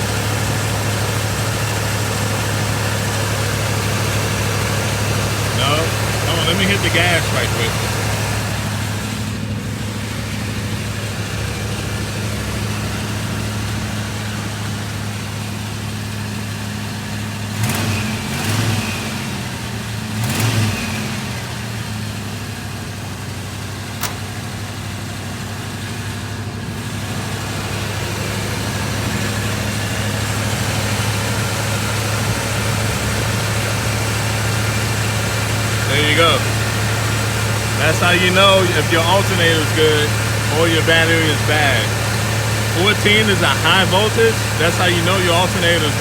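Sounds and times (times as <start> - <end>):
car engine idling and revving: 0.0 - 46.0
sharp click: 24.0 - 24.2.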